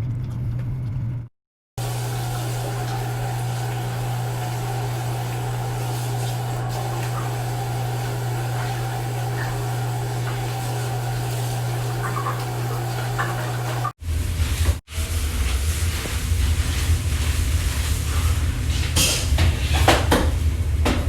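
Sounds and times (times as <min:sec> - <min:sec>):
steady mechanical hum: 0:01.8 - 0:21.0.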